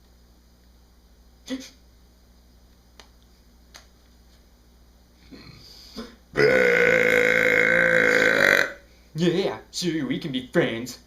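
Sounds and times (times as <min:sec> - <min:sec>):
man burping loudly: 0:06.4 - 0:08.8.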